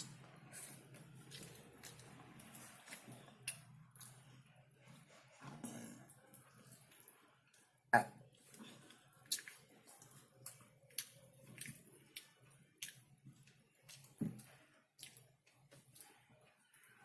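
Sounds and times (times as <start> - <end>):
chewing chicken: 0.0 - 7.8, 8.4 - 17.0.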